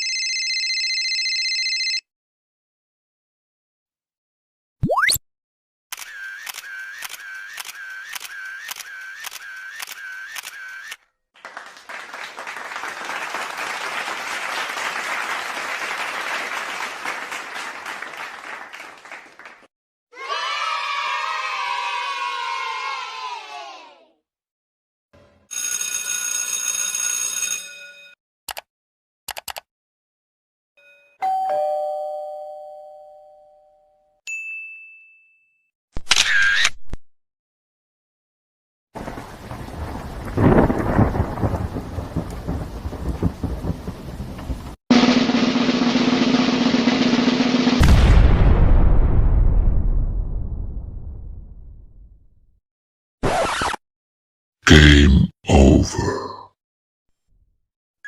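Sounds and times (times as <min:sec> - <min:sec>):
applause-like noise: 0:11.3 - 0:19.7
sharp clicks: 0:28.5 - 0:28.7, 0:29.3 - 0:29.7
ding-dong doorbell chime: 0:30.8 - 0:35.7.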